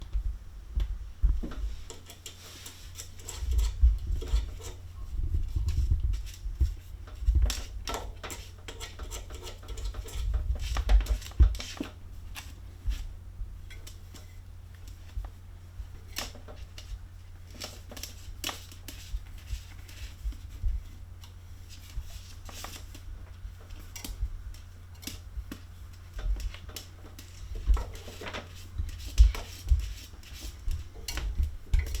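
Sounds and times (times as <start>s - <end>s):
soft low thumps: 0.0s - 1.9s, 3.4s - 7.8s, 10.2s - 13.8s, 19.0s - 22.2s, 23.0s - 26.7s, 28.6s - 32.0s.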